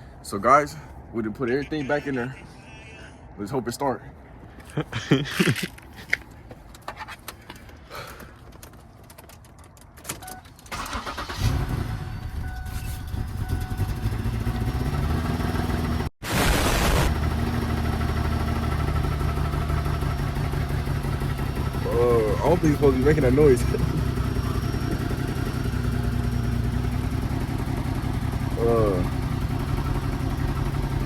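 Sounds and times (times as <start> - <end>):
car engine cranking and running: 7.3 - 16.1, 17.1 - 31.0
clicks and key rattles: 8.4 - 10.7
hissy burst: 16.2 - 17.2.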